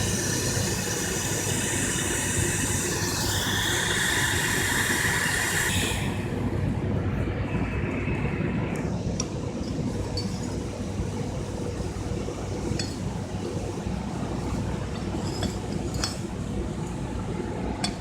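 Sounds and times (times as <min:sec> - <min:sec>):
low mechanical rumble: 0:00.0 - 0:18.0
light metallic clinks: 0:15.0 - 0:16.3.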